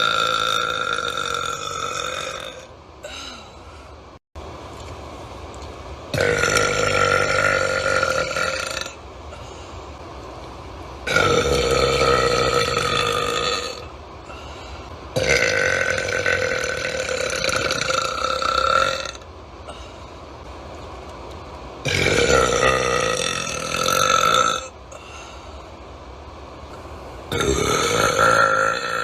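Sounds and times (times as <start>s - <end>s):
person burping: 0.0s - 3.6s, 6.2s - 9.0s, 11.1s - 13.8s, 15.2s - 19.2s, 21.9s - 24.7s, 27.3s - 29.0s.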